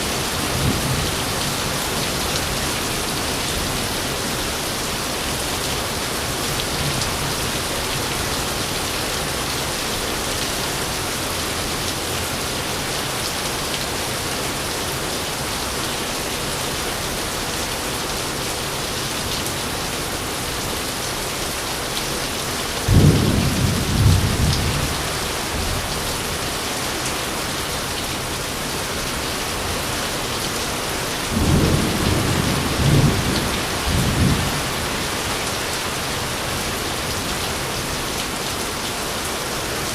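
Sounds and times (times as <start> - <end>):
steady rain: 0.0 - 39.9
thunder rumbling: 31.3 - 35.3.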